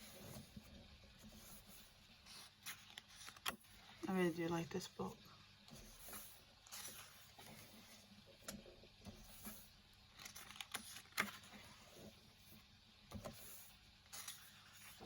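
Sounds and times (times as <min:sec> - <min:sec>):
faint pump hum: 0:00.0 - 0:15.0
paper pages rustling: 0:01.3 - 0:04.0, 0:09.3 - 0:12.2, 0:13.2 - 0:15.0.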